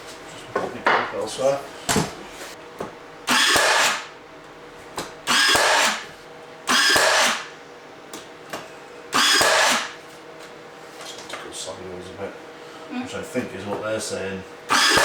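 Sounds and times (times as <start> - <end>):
power drill bursts: 3.3 - 4.1, 5.3 - 6.1, 6.7 - 7.5, 9.1 - 10.0, 14.7 - 15.0.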